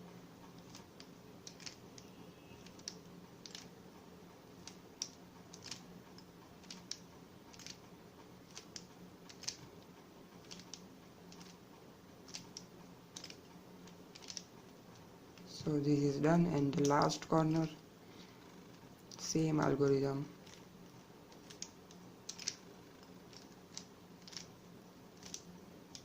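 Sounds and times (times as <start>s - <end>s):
puzzle cube plastic clicks: 0.6s - 3.7s, 4.5s - 5.9s, 6.6s - 7.8s, 8.5s - 9.7s, 10.4s - 11.6s, 12.3s - 14.5s, 21.3s - 24.6s, 25.2s - 26.0s.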